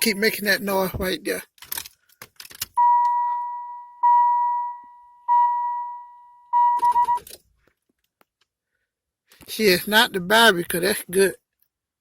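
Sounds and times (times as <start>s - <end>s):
dashboard warning chime: 2.8s - 7.3s.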